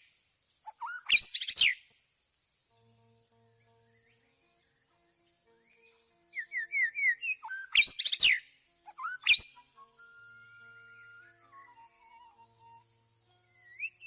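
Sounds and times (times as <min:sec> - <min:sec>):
bird singing whistles: 0:00.7 - 0:01.8, 0:05.7 - 0:14.0.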